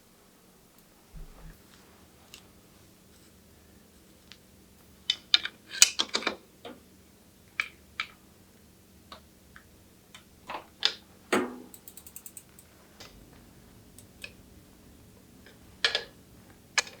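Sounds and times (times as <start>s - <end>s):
rapid even ratchet ticks: 10.8s - 14.4s
sharp metallic clicks and clacks: 11.4s - 13.2s, 13.9s - 14.4s.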